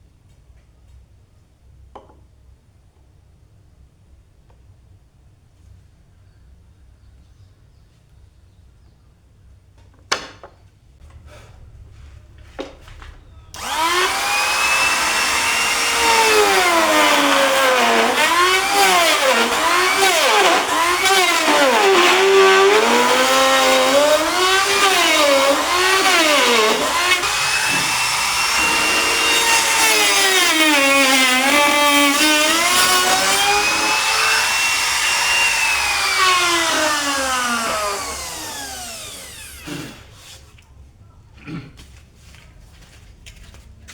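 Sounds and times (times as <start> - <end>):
electric power tool motor whine: 13.6 - 40.0.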